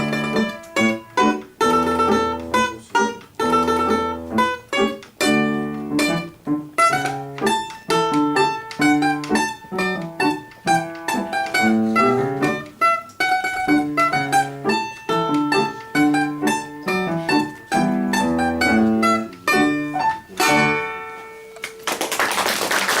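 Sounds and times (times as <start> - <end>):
domra plucked notes: 0.0 - 21.6
audience applause: 21.8 - 23.0.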